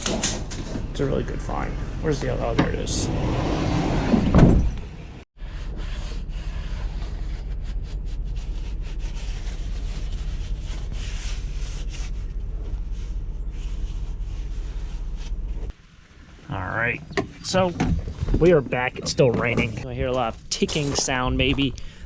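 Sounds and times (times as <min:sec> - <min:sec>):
vehicle engine running: 0:00.5 - 0:03.2, 0:05.0 - 0:17.8.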